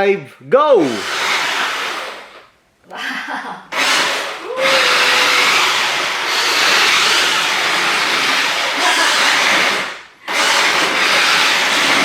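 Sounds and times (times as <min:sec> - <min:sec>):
toy car electric motors whirring: 0:00.8 - 0:02.5, 0:03.7 - 0:12.0.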